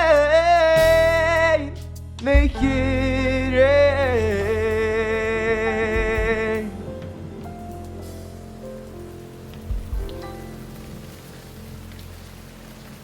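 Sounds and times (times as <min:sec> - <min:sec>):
person singing wordless notes: 0:00.0 - 0:07.4
low instrumental accompaniment: 0:00.0 - 0:13.0.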